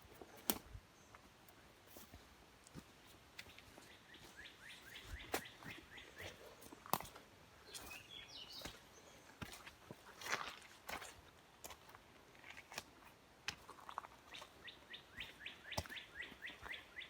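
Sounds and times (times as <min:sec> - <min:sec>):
footsteps on forest floor: 0:00.0 - 0:17.0.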